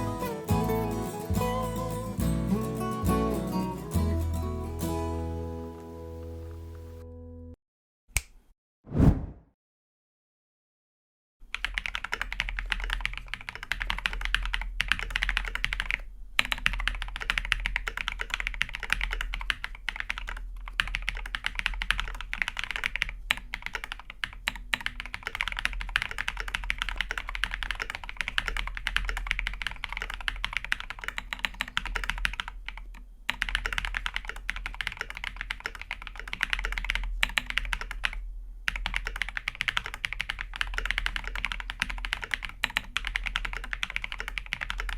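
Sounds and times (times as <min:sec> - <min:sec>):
mechanical keyboard typing: 0:11.5 - 0:44.9.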